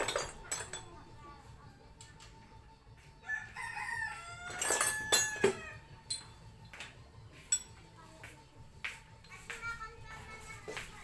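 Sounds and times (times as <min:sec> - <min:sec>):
rooster crowing: 0:03.2 - 0:05.8.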